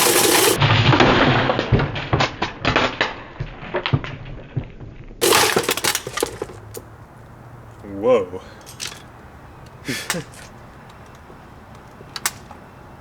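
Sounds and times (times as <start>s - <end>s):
fan motor buzzing: 0.0s - 0.6s
sparking crackling pops: 0.0s - 1.3s, 8.7s - 13.0s.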